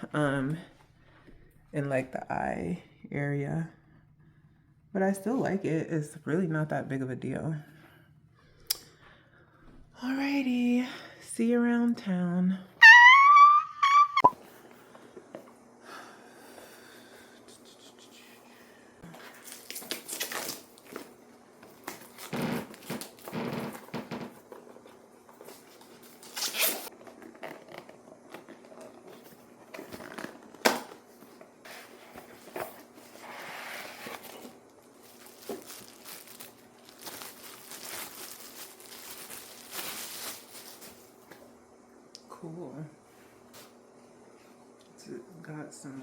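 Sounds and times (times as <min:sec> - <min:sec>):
rustling and crinkling: 0:19.1 - 0:41.5.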